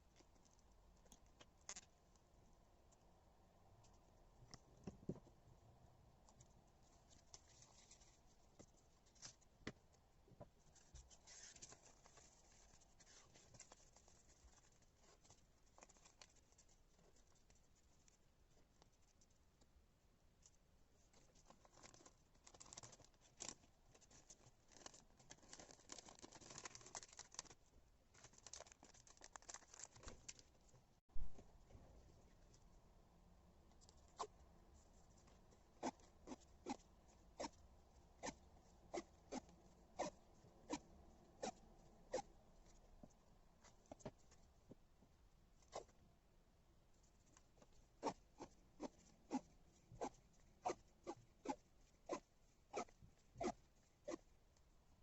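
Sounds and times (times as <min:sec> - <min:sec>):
tape and paper clicks and rustles: 0:21.1 - 0:30.6.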